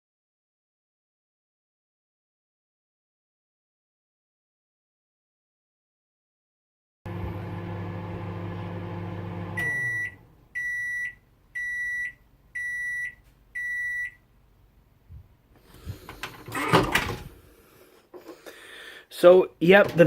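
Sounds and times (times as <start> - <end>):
microwave oven humming: 7.1 - 10.8
loud clunk and rattle: 16.0 - 17.4.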